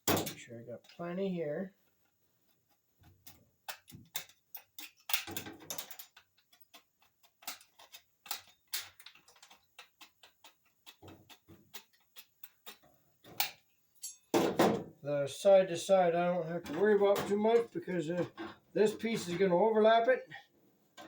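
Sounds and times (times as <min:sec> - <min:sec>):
sheet metal clicking and tapping: 0:01.9 - 0:14.9
metal scraping and rattling: 0:04.0 - 0:06.2, 0:16.5 - 0:20.0.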